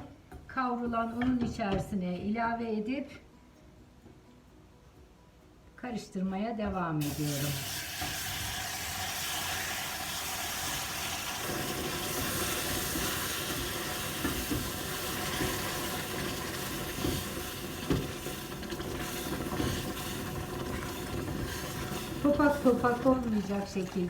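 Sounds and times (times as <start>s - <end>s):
syrup hissing and sizzling in a pot: 7.0s - 24.0s
spoon knocking against pot: 14.2s - 22.6s.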